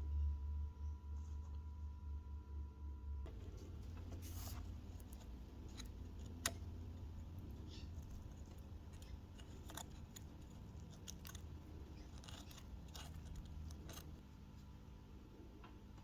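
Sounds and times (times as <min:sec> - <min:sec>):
low steady hum: 0:00.0 - 0:16.0
small parts clicking and tapping: 0:03.9 - 0:14.2.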